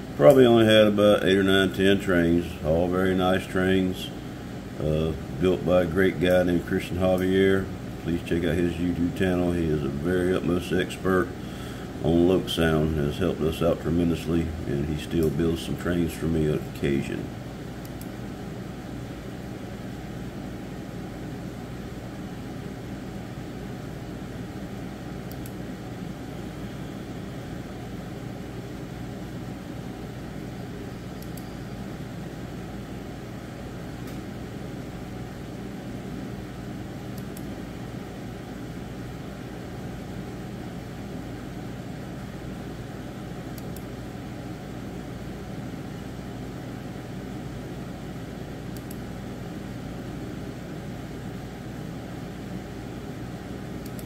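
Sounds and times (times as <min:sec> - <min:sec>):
mechanical hum and hiss: 0:00.0 - 0:54.0
faint high ticks: 0:31.2 - 0:31.5.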